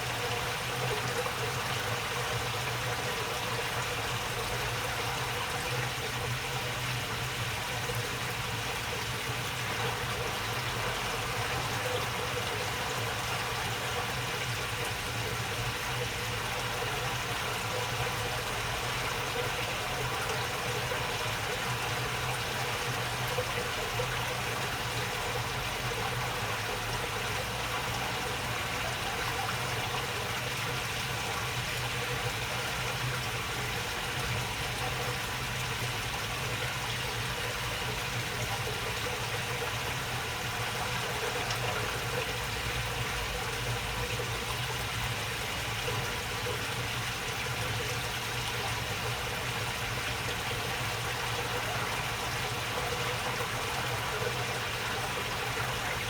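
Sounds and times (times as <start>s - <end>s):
water babbling in a channel: 0.0s - 56.0s.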